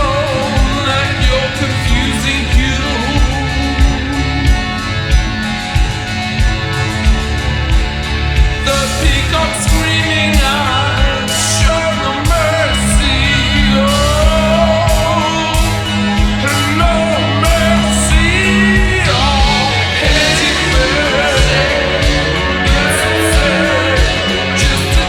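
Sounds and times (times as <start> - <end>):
slowed reverb-drenched rock song: 0.0 - 25.0
woman singing: 9.5 - 25.0.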